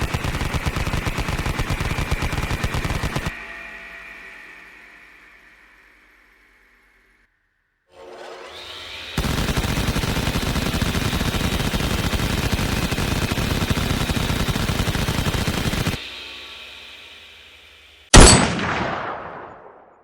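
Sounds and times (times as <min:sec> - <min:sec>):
machine gun rapid fire: 0:00.0 - 0:03.4, 0:09.2 - 0:16.0, 0:18.2 - 0:19.8.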